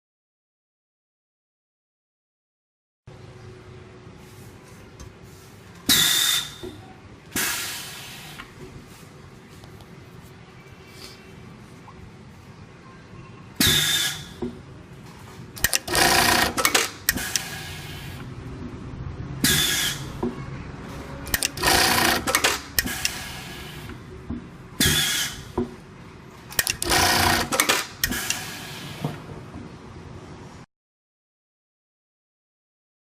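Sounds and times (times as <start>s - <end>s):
machine hum: 14.4s - 28.4s
sewing machine stitching: 15.6s - 18.2s, 21.3s - 23.9s, 26.6s - 28.6s.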